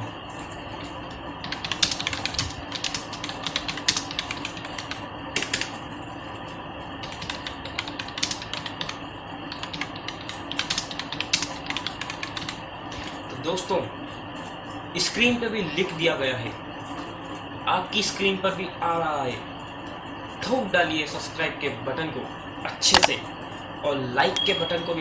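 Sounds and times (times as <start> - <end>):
keyboard key clicks: 22.9 - 23.2.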